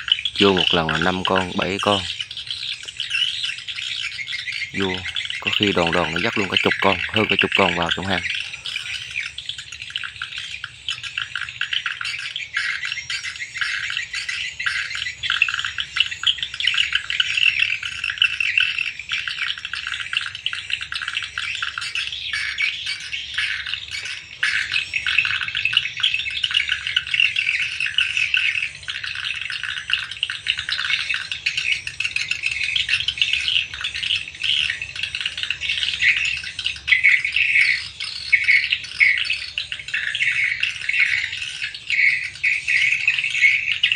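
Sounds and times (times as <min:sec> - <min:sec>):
swiftlets twittering: 0:00.0 - 0:02.2, 0:04.4 - 0:09.4, 0:23.4 - 0:26.4.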